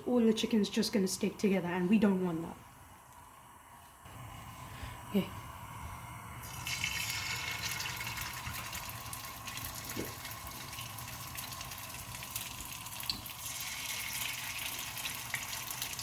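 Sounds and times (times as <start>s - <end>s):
chicken sizzling in hot oil: 6.4s - 16.0s.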